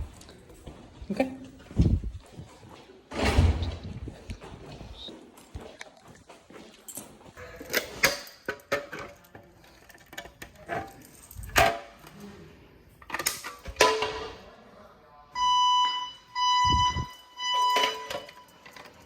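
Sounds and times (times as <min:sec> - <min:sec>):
fire alarm pulsing tone: 0:15.3 - 0:19.0.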